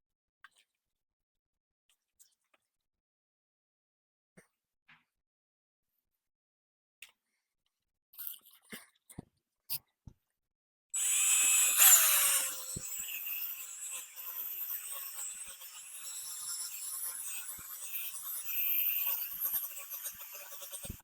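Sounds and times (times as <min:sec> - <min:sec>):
electric drill whine: 0:11.0 - 0:21.0
scratchy sanding hiss: 0:11.0 - 0:21.0.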